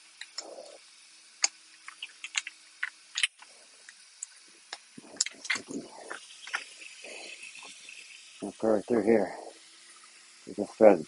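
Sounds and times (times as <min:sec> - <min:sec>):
small plastic clicks: 0:01.4 - 0:05.7.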